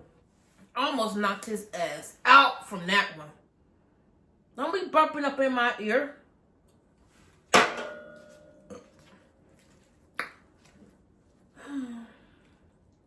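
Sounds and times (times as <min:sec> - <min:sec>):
utensil clinking on dish: 0:07.6 - 0:09.0.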